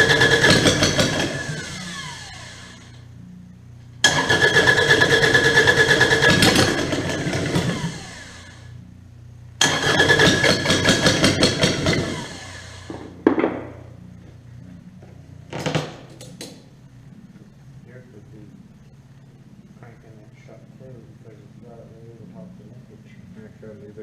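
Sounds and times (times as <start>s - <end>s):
diesel engine starter cranking: 4.0s - 8.6s, 9.6s - 12.9s.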